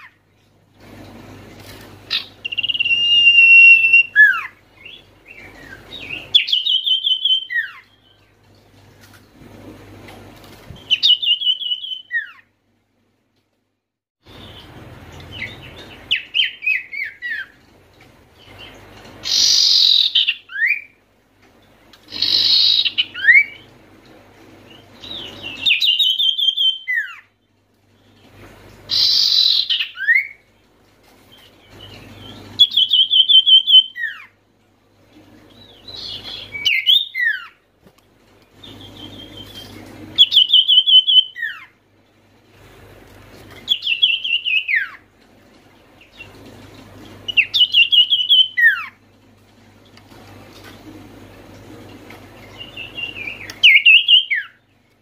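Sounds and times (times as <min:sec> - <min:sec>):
bird singing chirps and whistles: 0:02.1 - 0:08.2, 0:10.8 - 0:12.5, 0:15.3 - 0:17.6, 0:19.2 - 0:21.0, 0:22.1 - 0:23.7, 0:24.7 - 0:27.3, 0:28.9 - 0:30.4, 0:31.7 - 0:34.3, 0:35.6 - 0:37.6, 0:38.6 - 0:41.7, 0:43.7 - 0:45.0, 0:47.3 - 0:49.0, 0:52.5 - 0:54.6.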